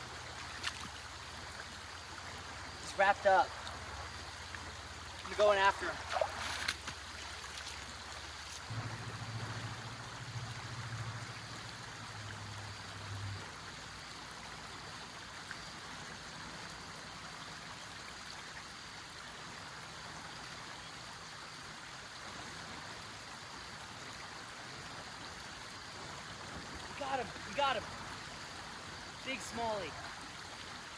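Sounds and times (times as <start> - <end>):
river water rushing: 0.0 - 14.0, 26.0 - 30.9.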